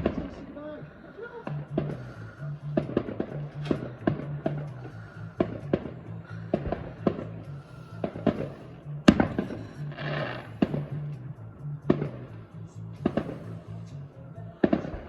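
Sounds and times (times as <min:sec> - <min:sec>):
fireworks bangs: 0:00.0 - 0:11.0, 0:13.0 - 0:13.6, 0:14.6 - 0:15.0
music with steady bass: 0:00.0 - 0:15.0.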